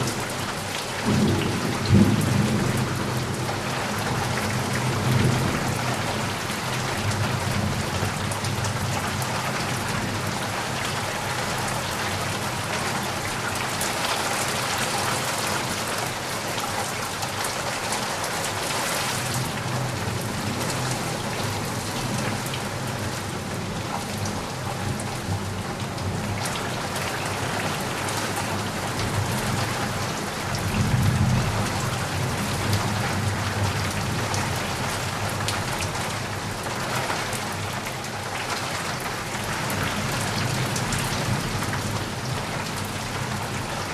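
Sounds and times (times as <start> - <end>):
low rumble of thunder: 0.0 - 11.3
heavy rain pattering: 0.0 - 43.9.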